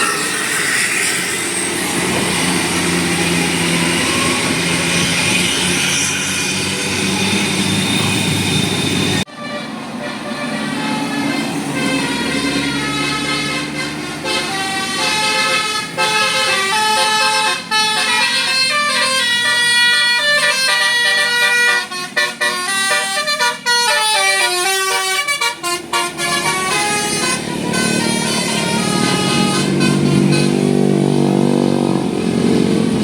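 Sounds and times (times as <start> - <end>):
bus engine running: 1.4 - 33.0
multi-note bus air horn melody: 9.2 - 30.9.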